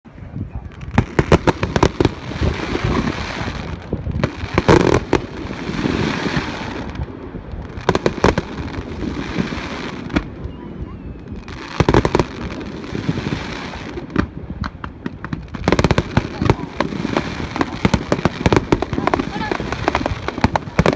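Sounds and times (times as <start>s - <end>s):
steady rushing hiss: 0.8s - 10.4s
firework shells bursting: 0.9s - 10.4s.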